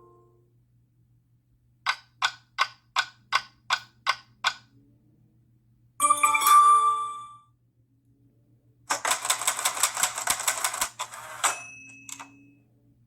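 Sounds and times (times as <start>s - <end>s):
ringing notification tone: 6.0s - 7.4s.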